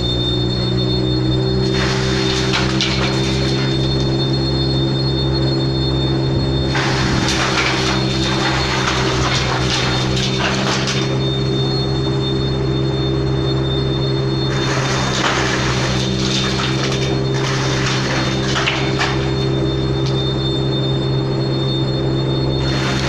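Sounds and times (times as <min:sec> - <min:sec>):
machine motor hum: 0:00.0 - 0:12.2, 0:14.4 - 0:21.3, 0:22.4 - 0:23.0
wood crackling grind: 0:01.6 - 0:04.4, 0:06.7 - 0:11.6, 0:14.5 - 0:20.4, 0:22.6 - 0:23.0.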